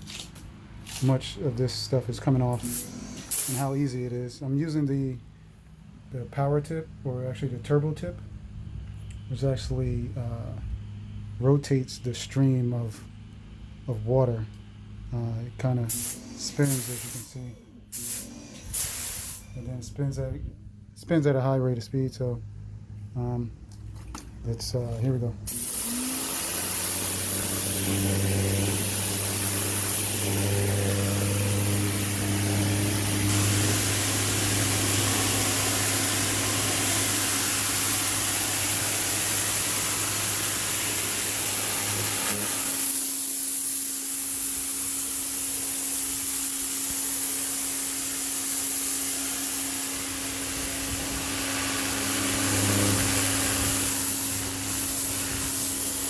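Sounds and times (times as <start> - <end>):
water spraying onto concrete: 0.0 - 1.3, 2.6 - 3.8, 15.9 - 17.3, 17.9 - 19.5, 25.5 - 56.0
pressure washer motor humming: 0.0 - 4.2, 15.6 - 19.6, 25.5 - 56.0.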